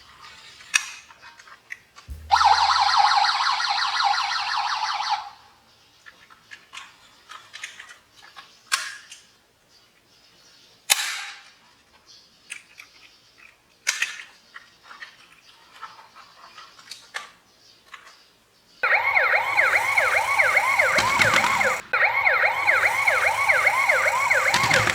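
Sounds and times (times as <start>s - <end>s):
toy cars clicking and clacking: 12.5s - 18.2s, 24.5s - 24.9s.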